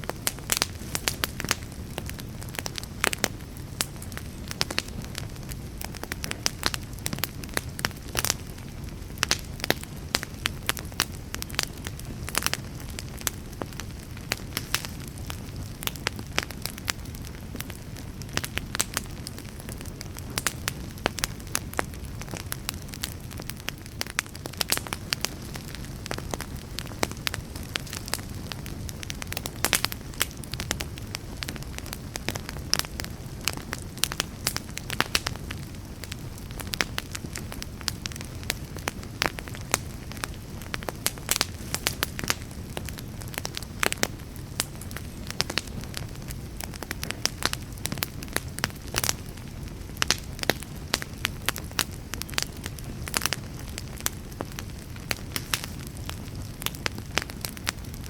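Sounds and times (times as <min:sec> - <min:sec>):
wood fire crackling and popping: 0:00.0 - 0:58.0.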